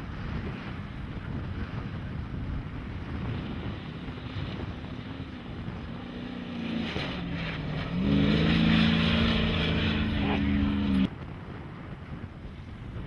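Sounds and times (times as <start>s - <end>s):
wind buffeting microphone: 0.0s - 13.0s
truck engine at high revs: 3.1s - 11.1s.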